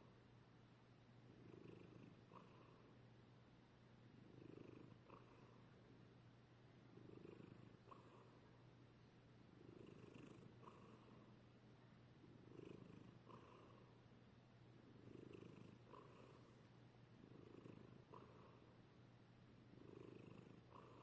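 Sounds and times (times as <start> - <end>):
cat snoring: 1.3 - 3.0, 4.2 - 5.7, 6.9 - 8.4, 9.6 - 11.3, 12.2 - 14.0, 15.0 - 16.6, 17.2 - 18.8, 19.7 - 21.0.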